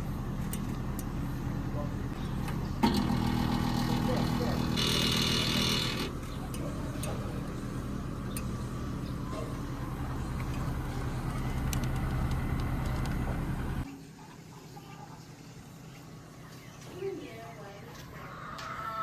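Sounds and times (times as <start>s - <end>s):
air-conditioner unit humming: 0.0s - 19.0s.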